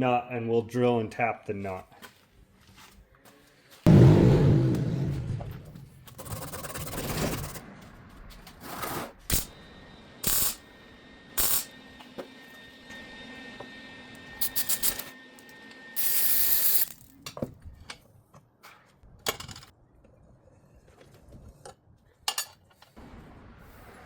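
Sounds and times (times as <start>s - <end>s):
metal-working tool bursts: 9.3s - 9.5s, 10.2s - 10.6s, 11.4s - 11.7s, 14.4s - 17.2s.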